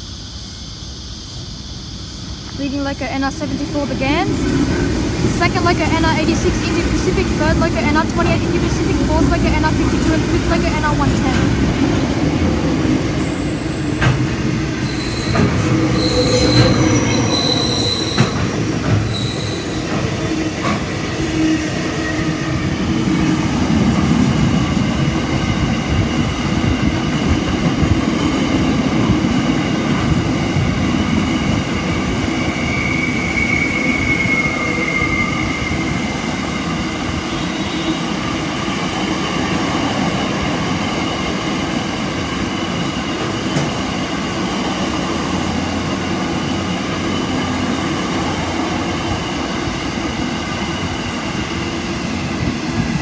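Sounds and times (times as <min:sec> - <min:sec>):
freight train rumbling on rails: 0:00.0 - 0:53.0
train wheel squealing: 0:13.1 - 0:23.2, 0:30.9 - 0:44.8.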